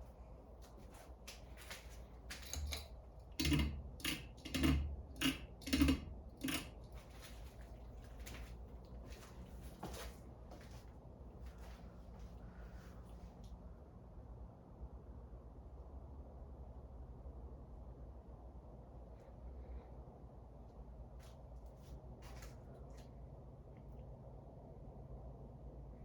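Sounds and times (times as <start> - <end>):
sharp clicks and knocks: 2.3 - 7.0.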